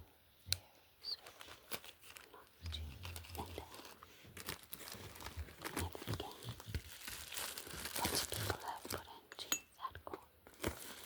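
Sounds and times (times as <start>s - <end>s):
packaging crinkling and rustling: 1.2s - 9.2s, 10.4s - 11.0s.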